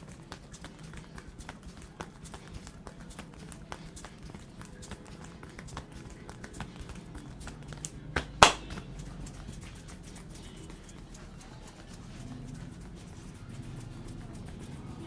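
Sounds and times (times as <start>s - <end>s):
hands tapping on head: 0.0s - 15.0s
sharp hand smack: 6.4s - 9.0s.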